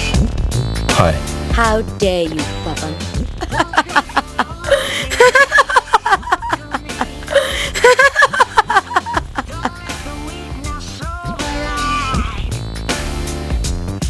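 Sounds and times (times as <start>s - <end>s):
trailer music with steady beat: 0.0s - 14.0s.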